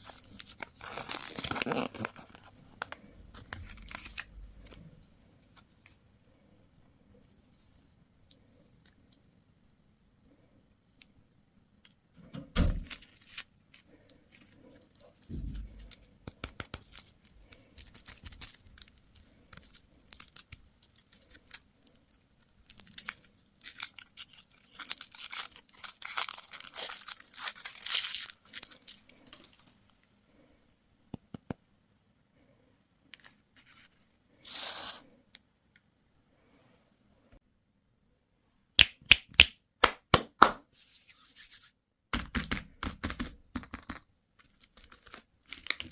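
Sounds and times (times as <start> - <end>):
wrapper tearing: 0.0 - 2.5, 3.5 - 4.3, 14.4 - 29.8, 44.4 - 45.9
candy wrapper crinkling: 0.0 - 4.8, 14.3 - 29.9, 43.6 - 45.9.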